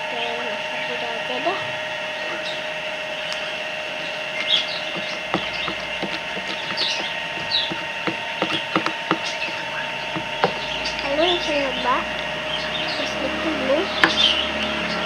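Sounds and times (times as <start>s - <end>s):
slime being stirred: 4.3s - 11.4s.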